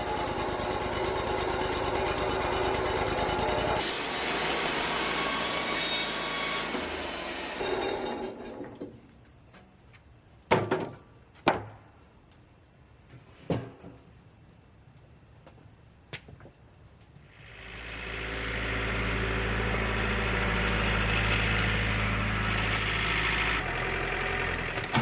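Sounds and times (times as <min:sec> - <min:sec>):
bandsaw cutting wood: 0:00.0 - 0:08.3, 0:17.4 - 0:25.0.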